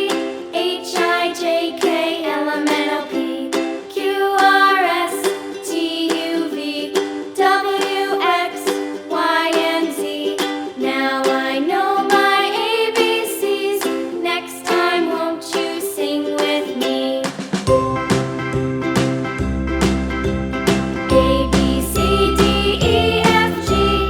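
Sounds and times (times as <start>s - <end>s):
melody with plucked strings: 17.7s - 24.0s.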